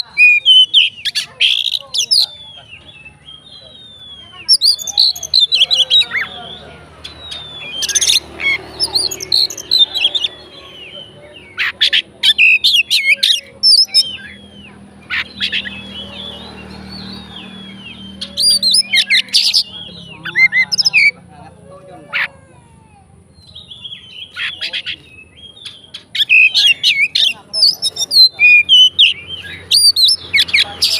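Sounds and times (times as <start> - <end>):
bird singing: 0.0 - 30.9.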